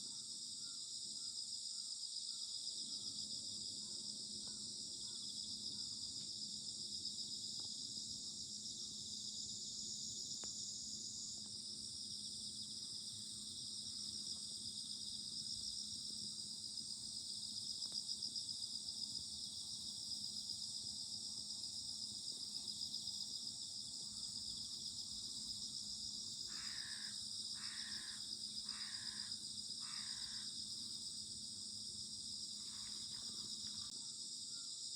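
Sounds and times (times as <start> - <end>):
crickets trilling: 0.0 - 34.9
crow cawing: 26.5 - 30.5.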